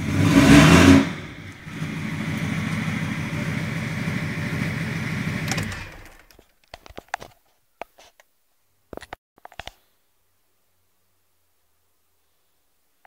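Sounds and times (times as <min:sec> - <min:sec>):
diesel engine idling: 0:00.0 - 0:06.3.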